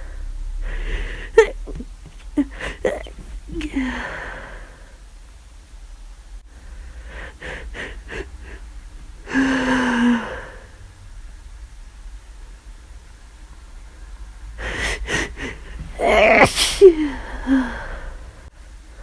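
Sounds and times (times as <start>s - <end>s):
person catching breaths: 0.0s - 4.9s, 7.0s - 10.7s, 14.6s - 18.3s
person sneezing: 1.2s - 4.0s, 14.8s - 17.7s.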